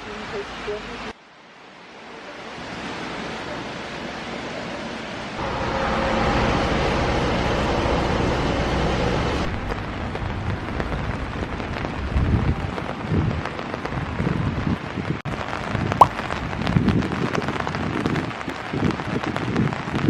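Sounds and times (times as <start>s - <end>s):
light rain patter: 0.0s - 5.6s, 6.9s - 20.0s
rain and strong wind: 0.0s - 20.0s
wind buffeting thumps: 9.5s - 20.0s.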